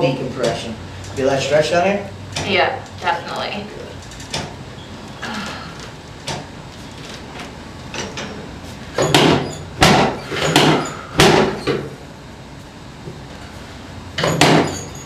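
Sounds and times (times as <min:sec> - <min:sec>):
loud clunks on a table: 0:09.0 - 0:11.9, 0:14.2 - 0:14.9.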